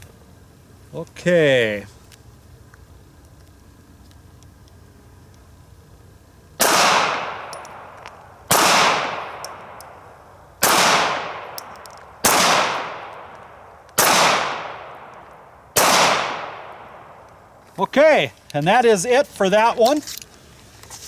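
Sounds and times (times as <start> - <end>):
pistol shots: 6.6 - 9.9, 10.6 - 17.2.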